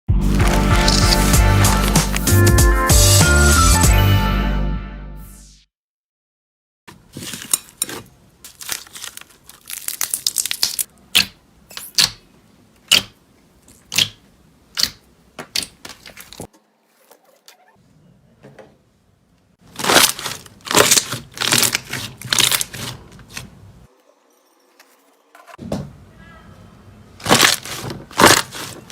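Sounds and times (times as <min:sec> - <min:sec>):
slime crackling and popping: 0:00.3 - 0:02.3, 0:08.6 - 0:11.4, 0:19.7 - 0:22.9, 0:27.2 - 0:28.7.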